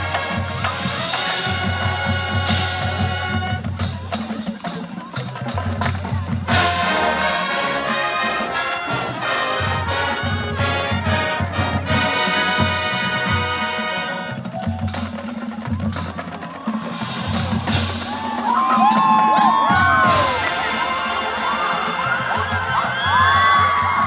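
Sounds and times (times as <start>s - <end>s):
brass section playing chords: 0.0s - 4.0s, 6.5s - 14.5s, 20.0s - 23.6s.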